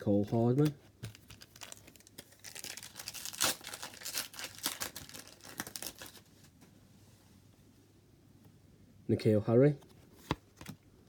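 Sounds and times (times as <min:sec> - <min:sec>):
wrapper tearing and crinkling: 0:01.0 - 0:06.3.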